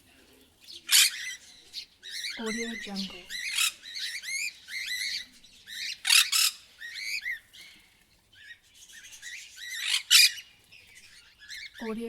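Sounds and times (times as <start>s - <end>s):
parrots squawking: 0.7s - 7.8s, 8.4s - 12.0s
parrot chirps: 0.9s - 7.4s, 9.3s - 10.4s.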